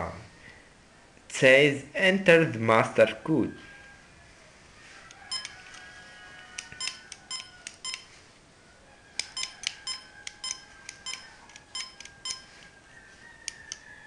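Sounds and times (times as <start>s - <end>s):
keypad beeps: 5.3s - 5.5s, 6.8s - 8.1s, 9.2s - 12.6s.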